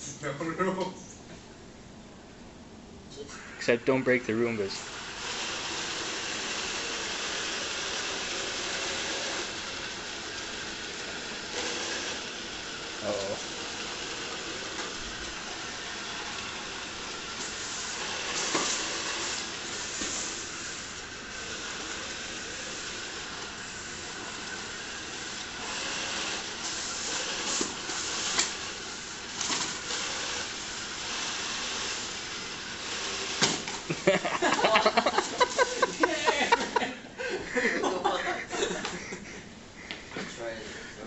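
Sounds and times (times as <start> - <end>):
robot vacuum motor whirring: 4.8 - 36.7.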